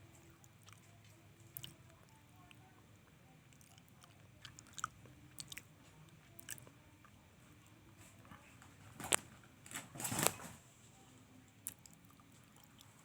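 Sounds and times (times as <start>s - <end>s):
cat crunching food: 0.1s - 7.8s, 11.6s - 13.0s.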